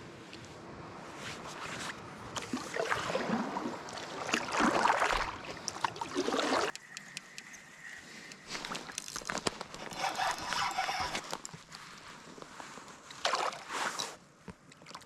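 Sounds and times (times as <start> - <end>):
water splashing around paddle: 2.4 - 6.8, 13.2 - 14.2.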